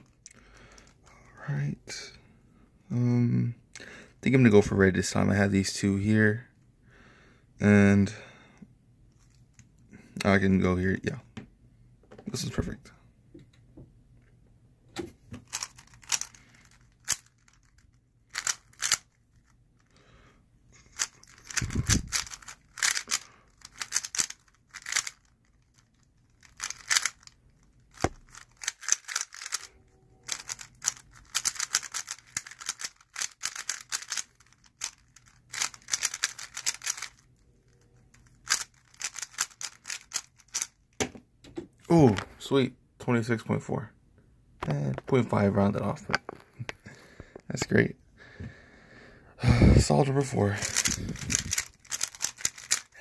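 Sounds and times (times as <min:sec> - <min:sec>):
puzzle cube layers clicking: 0:15.5 - 0:19.1, 0:21.0 - 0:37.2, 0:38.2 - 0:40.7, 0:50.6 - 0:52.9.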